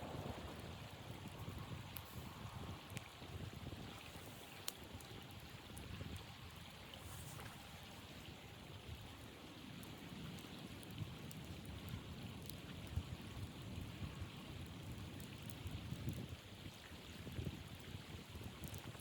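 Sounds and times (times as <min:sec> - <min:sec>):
blizzard wind blowing: 0:00.0 - 0:08.1
faint ticks: 0:01.2 - 0:03.1, 0:04.1 - 0:06.3, 0:18.4 - 0:19.0.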